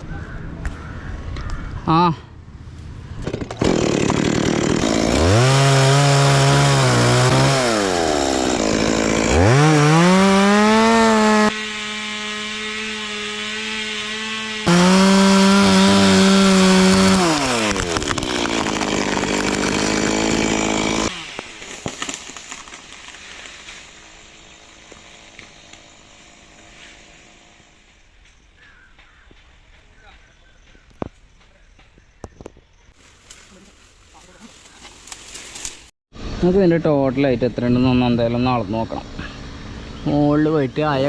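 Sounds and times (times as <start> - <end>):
chainsaw revving: 3.3 - 22.3.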